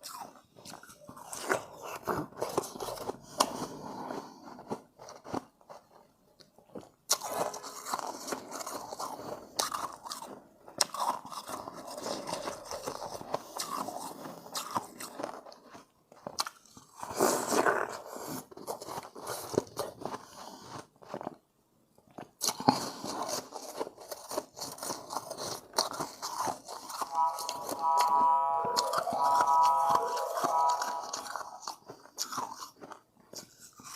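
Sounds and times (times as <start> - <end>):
ice crunching being chewed: 0.0 - 33.9
steady held tone: 27.1 - 31.7.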